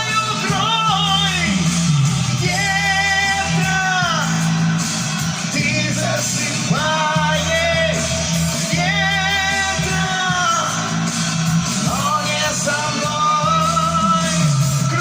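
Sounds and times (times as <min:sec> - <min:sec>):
low backing track: 0:00.0 - 0:15.0.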